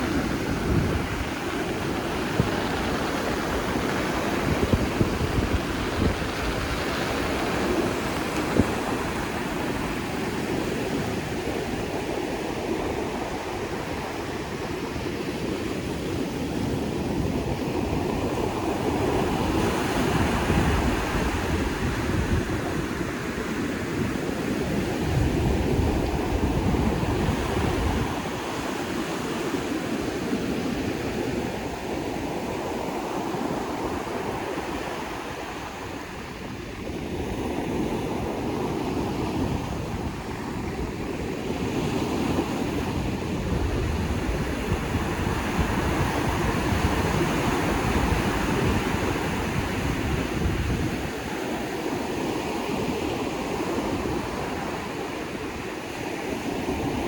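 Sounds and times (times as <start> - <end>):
sea waves breaking on shore: 0.0 - 57.0
wind buffeting microphone: 0.0 - 57.0.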